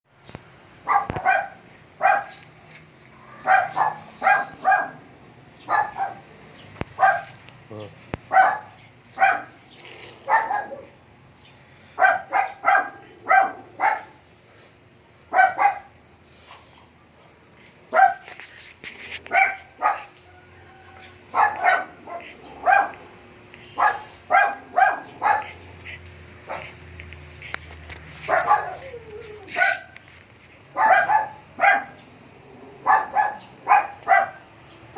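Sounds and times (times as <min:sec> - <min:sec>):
dog barking: 0:00.8 - 0:02.4, 0:03.3 - 0:06.3, 0:07.0 - 0:07.4, 0:08.3 - 0:09.6, 0:10.2 - 0:11.0, 0:12.0 - 0:14.2, 0:15.3 - 0:15.9, 0:17.9 - 0:18.3, 0:19.3 - 0:20.2, 0:21.3 - 0:23.0, 0:23.8 - 0:25.6, 0:26.5 - 0:26.8, 0:28.2 - 0:30.0, 0:30.7 - 0:32.0, 0:32.8 - 0:34.5.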